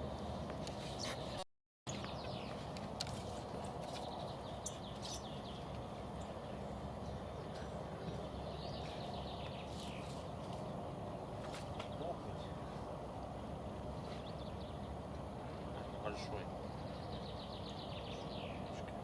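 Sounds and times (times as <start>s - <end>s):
small birds chirping: 0.3s - 12.9s, 13.8s - 19.0s.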